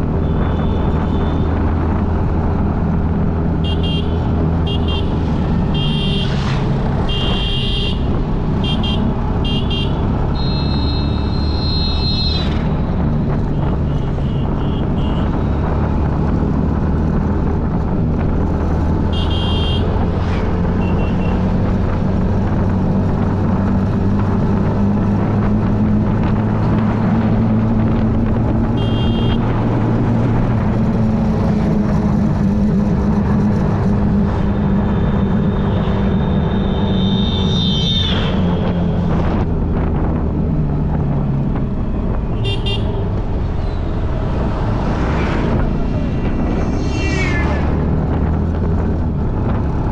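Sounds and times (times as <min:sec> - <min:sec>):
traffic engine hum: 0:00.0 - 0:49.9
car horn toots: 0:03.6 - 0:06.3, 0:07.0 - 0:12.4, 0:19.1 - 0:19.9, 0:28.7 - 0:29.5, 0:42.4 - 0:43.0.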